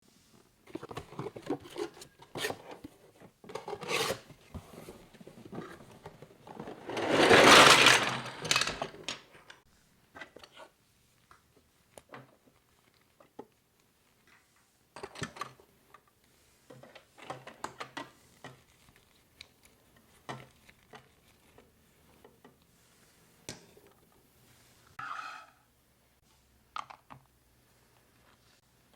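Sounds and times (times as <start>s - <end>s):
box rustling: 0.6s - 9.2s
plastic pieces clicking: 6.7s - 9.6s.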